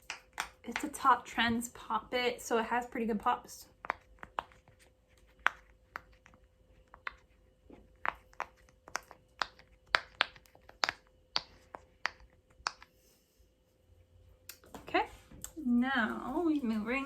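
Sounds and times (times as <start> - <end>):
pop-it toy bubbles popping: 8.0 - 12.9.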